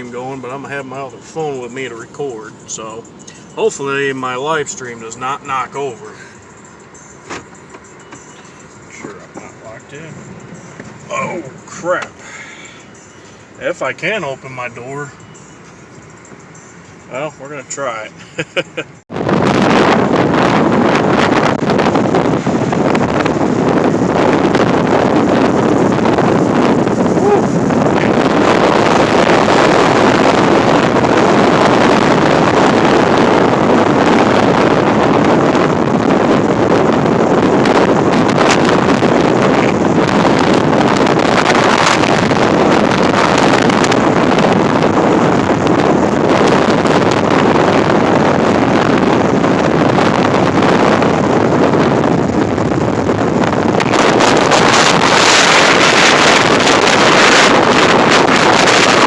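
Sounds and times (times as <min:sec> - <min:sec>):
wind buffeting microphone: 0:19.0 - 0:59.0.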